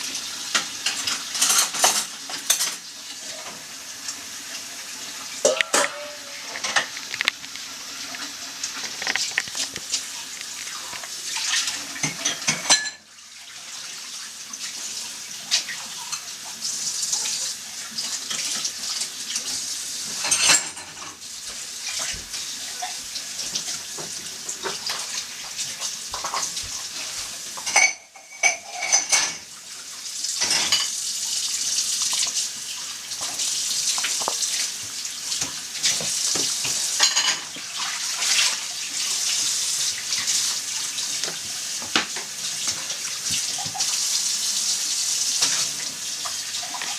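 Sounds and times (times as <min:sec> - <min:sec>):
dishes and cutlery clinking: 0:00.5 - 0:03.6, 0:05.4 - 0:13.1, 0:20.1 - 0:21.2, 0:22.0 - 0:29.6, 0:30.4 - 0:31.0, 0:33.2 - 0:34.7, 0:35.3 - 0:44.0
tap running into sink: 0:05.4 - 0:12.8, 0:33.1 - 0:38.5, 0:40.1 - 0:44.0.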